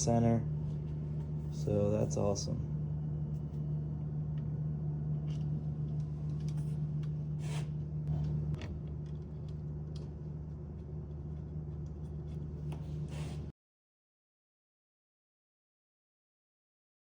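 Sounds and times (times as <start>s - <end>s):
steady low hum: 0.0s - 13.5s.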